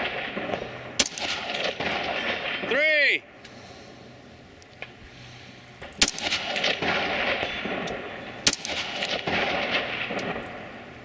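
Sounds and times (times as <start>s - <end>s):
rifle shots with rolling echo: 0.0s - 3.4s, 5.8s - 11.0s.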